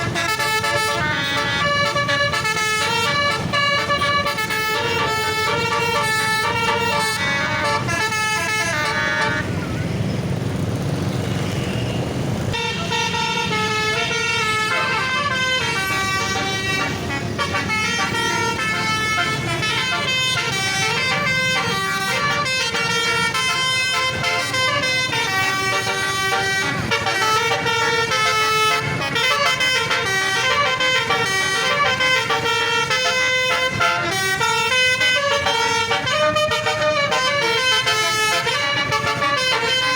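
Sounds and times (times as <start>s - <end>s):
air horn melody: 0.0s - 9.9s, 12.5s - 39.9s.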